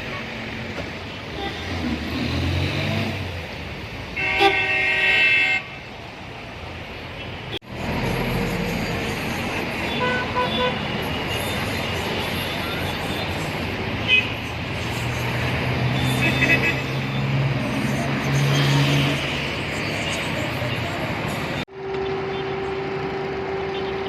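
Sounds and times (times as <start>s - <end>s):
road traffic: 0.0s - 24.0s
car horn: 4.2s - 5.8s, 9.9s - 10.9s, 15.9s - 17.2s, 21.9s - 24.0s.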